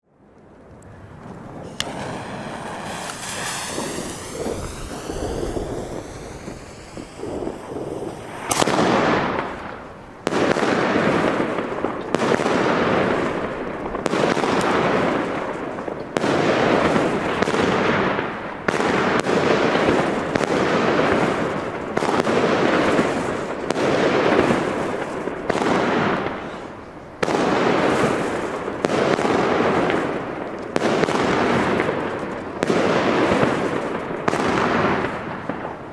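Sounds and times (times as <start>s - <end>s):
fireworks bangs: 0.7s - 35.9s
fireworks hiss: 1.1s - 11.7s.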